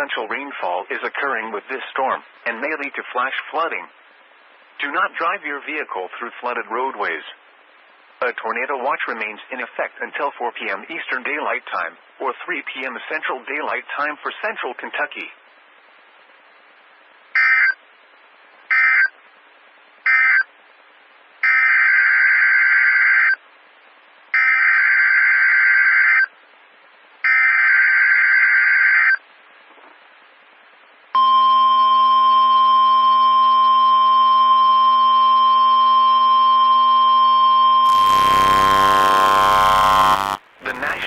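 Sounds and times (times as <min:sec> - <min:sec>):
steady warning alarm tone: 0:37.6 - 0:41.0
warbling data bursts: 0:37.8 - 0:41.0.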